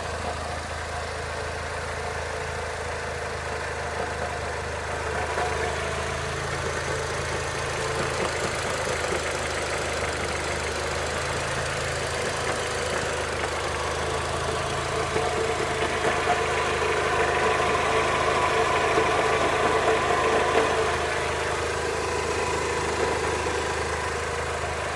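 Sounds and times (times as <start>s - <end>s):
car engine idling: 0.0s - 24.9s
gearbox bearing knocking: 6.8s - 24.9s.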